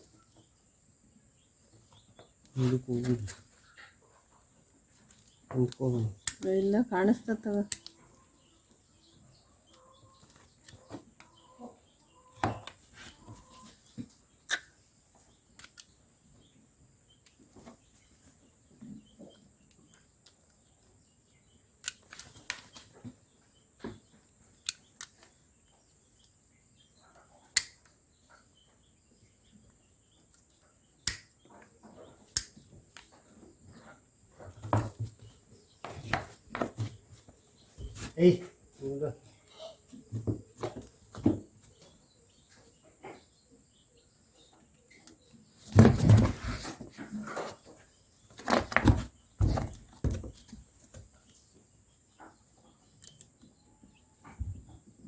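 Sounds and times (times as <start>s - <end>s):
shuffling: 34.4s - 39.3s, 45.6s - 51.2s.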